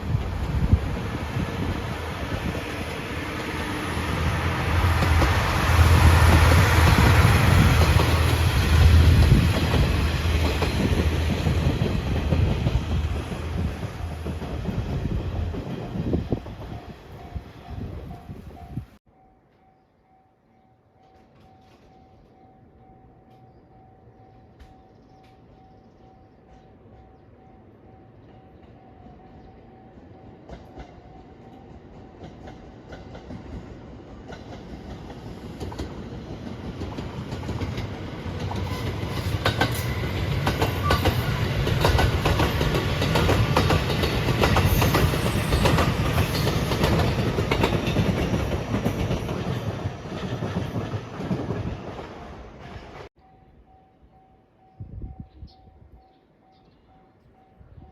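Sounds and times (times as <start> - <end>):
electric train passing: 0.0 - 53.1
wheels clacking over rail joints: 2.4 - 17.3, 32.1 - 52.9.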